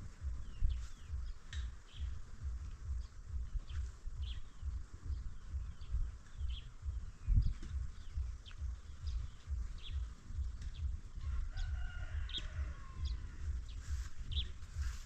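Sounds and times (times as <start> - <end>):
steady low rumble: 0.0 - 15.0
rooster crowing: 11.2 - 13.7.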